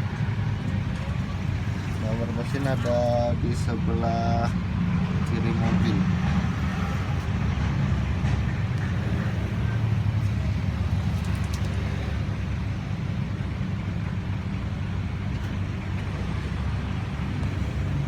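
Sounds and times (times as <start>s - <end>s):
car engine idling: 0.0s - 18.0s.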